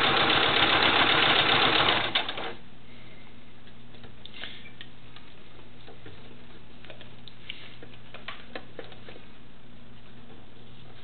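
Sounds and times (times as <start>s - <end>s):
sewing machine running: 0.0s - 2.6s
faint steady hum: 1.5s - 11.0s.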